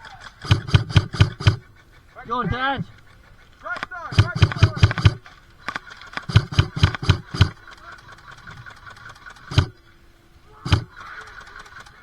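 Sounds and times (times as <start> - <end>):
airsoft gun shots: 0.2 - 1.7, 3.7 - 7.7, 9.5 - 9.8, 10.7 - 11.2.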